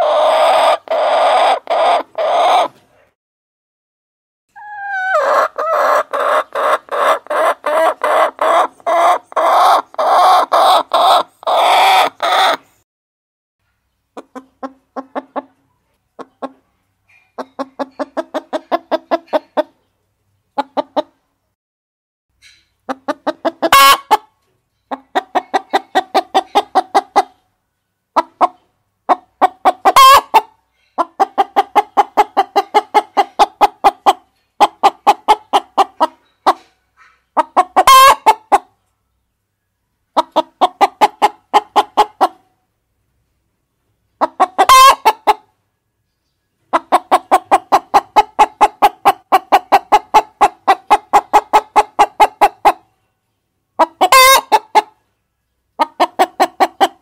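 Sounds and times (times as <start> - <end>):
hens clucking: 0.0 - 2.9, 4.6 - 12.7, 14.1 - 19.9, 20.5 - 21.2, 22.9 - 27.5, 28.1 - 38.9, 40.1 - 42.5, 44.1 - 45.6, 46.6 - 53.0, 53.8 - 55.0, 55.8 - 57.0
shrill hen call: 4.5 - 5.8.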